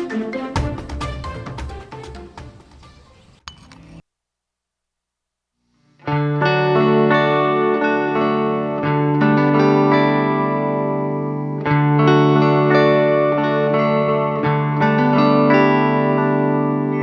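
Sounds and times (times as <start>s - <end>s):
electric guitar chords: 5.8s - 17.0s.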